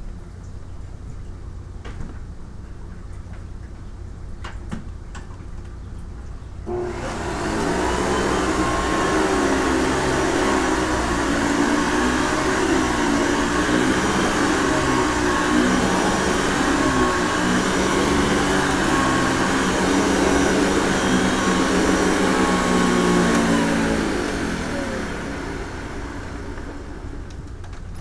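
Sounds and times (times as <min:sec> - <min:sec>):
vacuum cleaner motor humming: 0:06.7 - 0:27.8.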